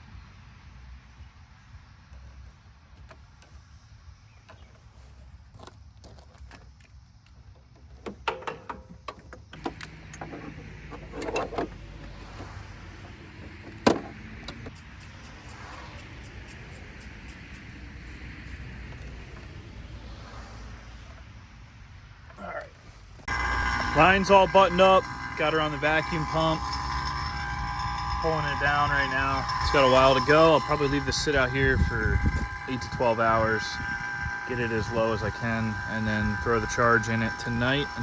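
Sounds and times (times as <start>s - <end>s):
tools clicking and knocking: 8.0s - 12.5s
vacuum pump humming: 9.6s - 18.5s, 23.3s - 38.0s.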